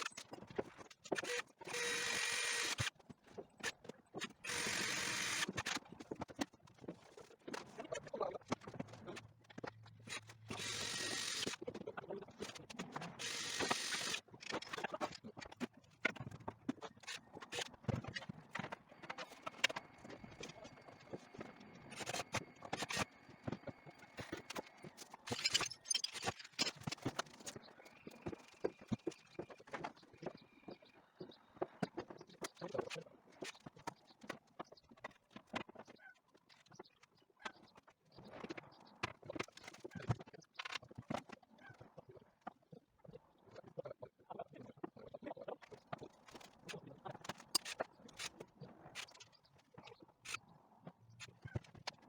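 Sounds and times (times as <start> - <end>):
handheld power tool running: 1.2 - 2.9, 4.4 - 5.7, 10.1 - 11.6, 13.2 - 14.2.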